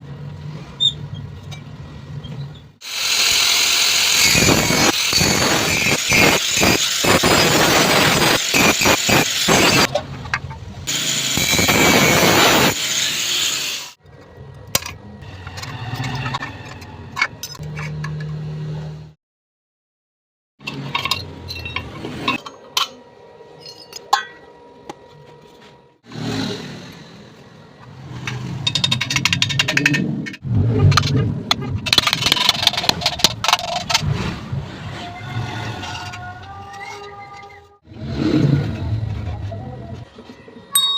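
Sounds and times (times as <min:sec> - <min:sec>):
welding arc crackling hiss: 0:02.8 - 0:09.9, 0:10.9 - 0:14.0.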